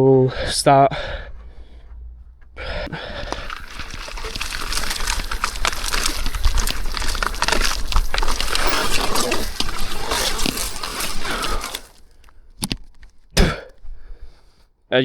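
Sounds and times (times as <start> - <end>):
low rumble: 0.0 - 11.2
bike rattling: 0.0 - 14.6
bike tyres crunching over dirt: 0.0 - 14.6.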